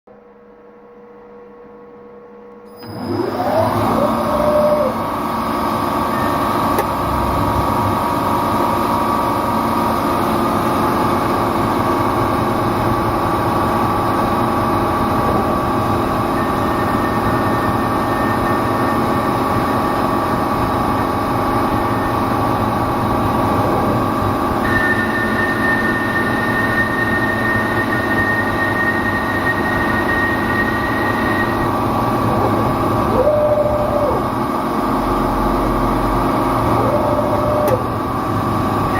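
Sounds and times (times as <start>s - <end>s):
lathe machine hum: 2.8s - 38.9s
high thin whine: 6.0s - 9.8s, 20.8s - 34.3s.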